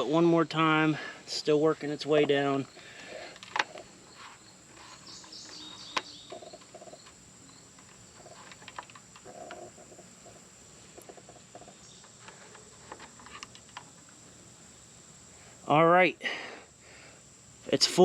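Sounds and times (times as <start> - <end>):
faint animal chirping: 2.7 - 8.5.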